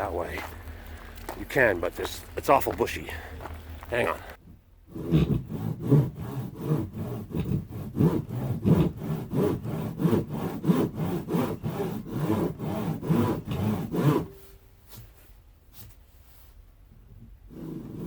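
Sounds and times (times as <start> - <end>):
footsteps through bushes: 0.0 - 4.4.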